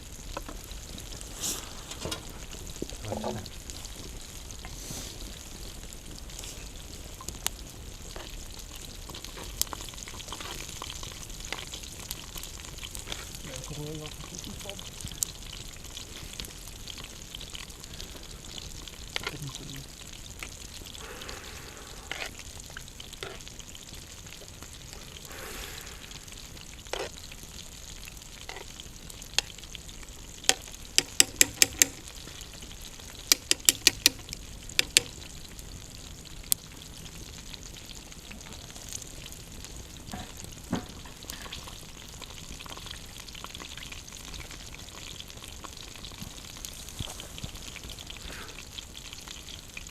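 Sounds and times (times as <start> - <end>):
campfire hissing and crackling: 0.0 - 49.9
loud snapping clicks: 33.3 - 35.1.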